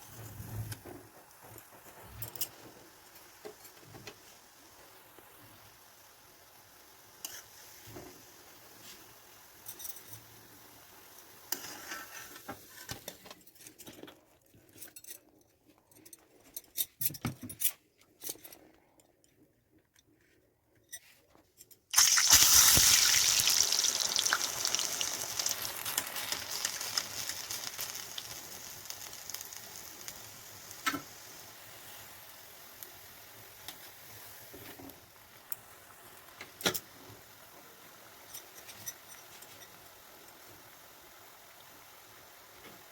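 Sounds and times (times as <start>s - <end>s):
batter sizzling in hot oil: 0.0s - 13.1s, 21.9s - 42.9s.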